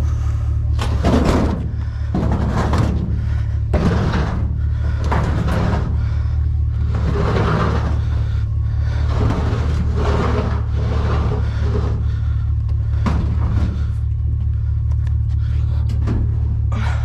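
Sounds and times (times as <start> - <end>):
vehicle engine and road noise: 0.0 - 17.0.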